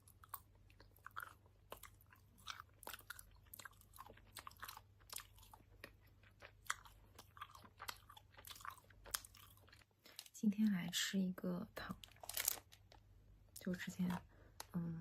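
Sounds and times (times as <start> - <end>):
chewing sounds: 0.0 - 10.3
faint low hum: 0.0 - 15.0.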